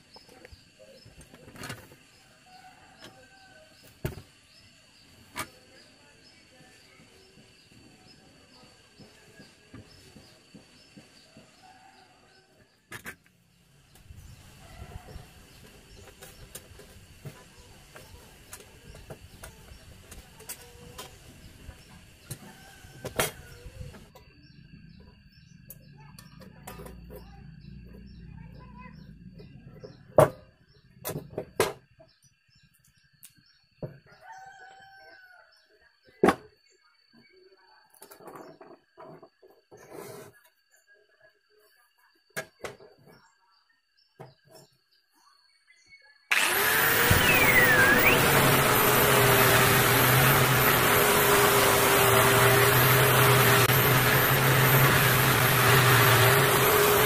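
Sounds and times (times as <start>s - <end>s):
motor humming and whining: 46.3s - 57.0s.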